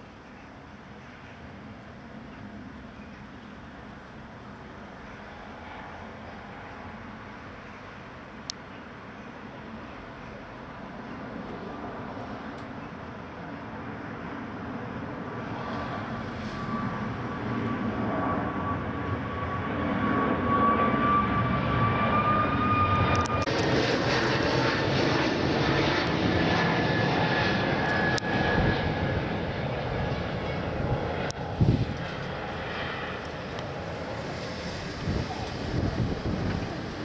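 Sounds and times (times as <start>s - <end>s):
jet aircraft flying past: 1.4s - 8.4s, 9.5s - 37.0s
high steady jet whine: 9.5s - 37.0s.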